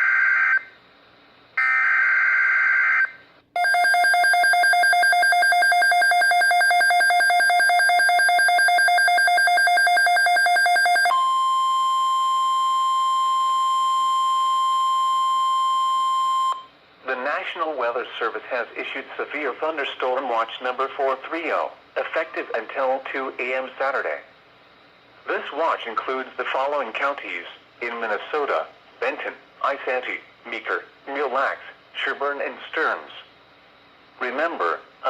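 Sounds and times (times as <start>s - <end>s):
steady high alarm tone: 1.6s - 16.7s.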